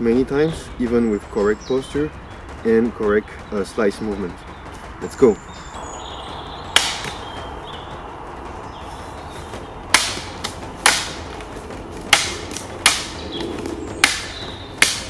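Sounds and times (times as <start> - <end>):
sword cutting bamboo: 6.8 - 7.2, 9.9 - 11.5, 12.1 - 15.0.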